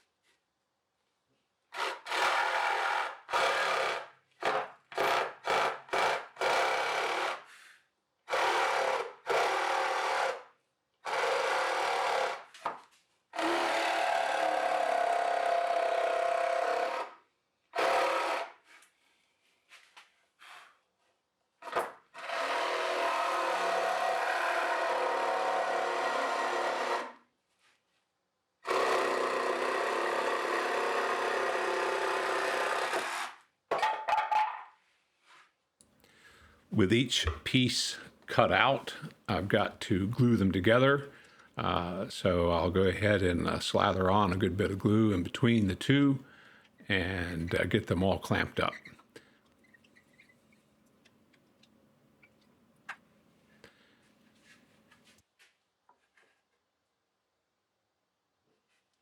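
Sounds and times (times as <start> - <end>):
jigsaw cutting plywood: 1.7 - 7.5, 8.3 - 12.8, 13.4 - 17.2, 17.8 - 18.6, 21.6 - 27.2, 28.6 - 33.4.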